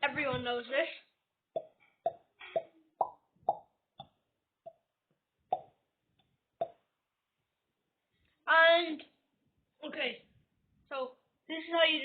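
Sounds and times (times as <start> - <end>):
finger mouth pops: 1.6 - 4.8, 5.5 - 5.7.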